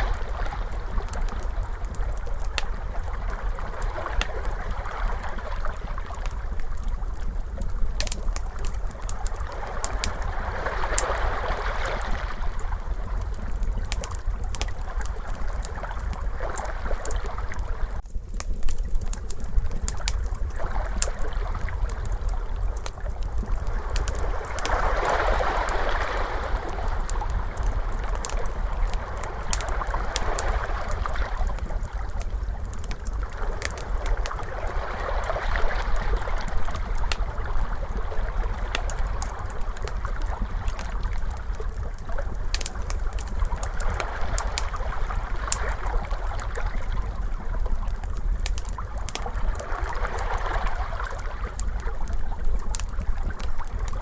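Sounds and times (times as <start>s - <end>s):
steady low rumble: 0.0s - 50.0s
fire crackling and popping: 0.0s - 54.0s
ocean waves: 9.3s - 13.0s, 23.8s - 32.0s, 33.2s - 39.4s.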